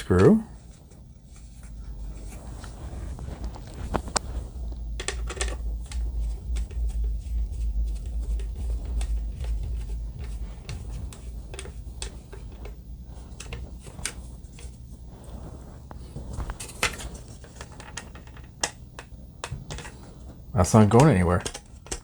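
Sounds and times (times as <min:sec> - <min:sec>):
low hum: 0:00.0 - 0:21.0
screw clicking and creaking in plastic: 0:04.9 - 0:07.2, 0:21.1 - 0:22.0.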